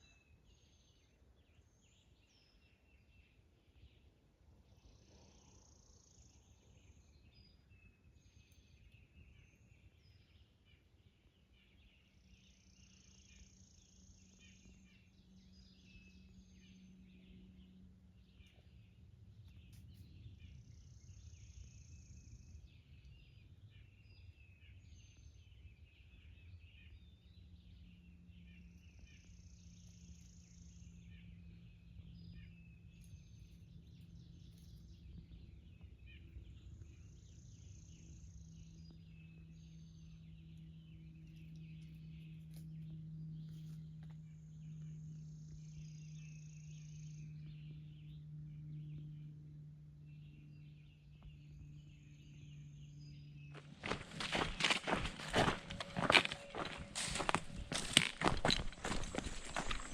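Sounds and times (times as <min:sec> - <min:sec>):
high bird song: 0:00.0 - 0:59.9
birds chirping: 0:50.1 - 0:59.9.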